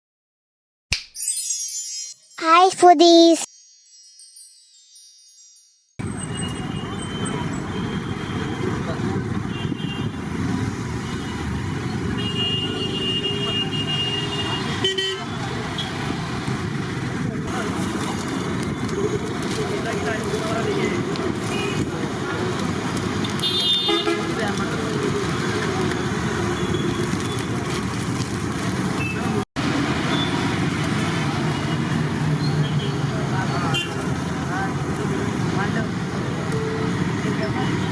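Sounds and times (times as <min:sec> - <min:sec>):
road traffic: 0:06.0 - 0:37.9
vehicle horn toot: 0:12.2 - 0:15.4, 0:23.4 - 0:24.3, 0:33.7 - 0:33.9.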